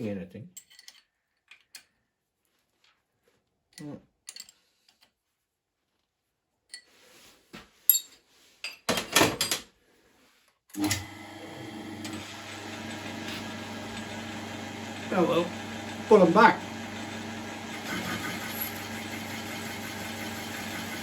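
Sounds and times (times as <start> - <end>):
lathe humming: 10.8 - 21.0.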